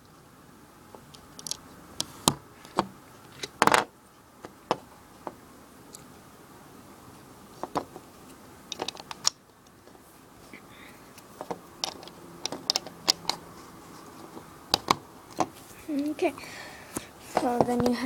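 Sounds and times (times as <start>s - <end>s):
plastic bricks clicking: 8.7s - 9.4s, 11.4s - 13.4s.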